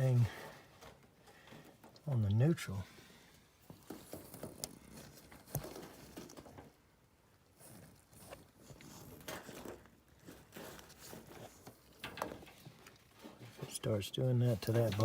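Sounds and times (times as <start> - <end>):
handling clicks and rustles: 3.6 - 6.8, 7.4 - 15.0.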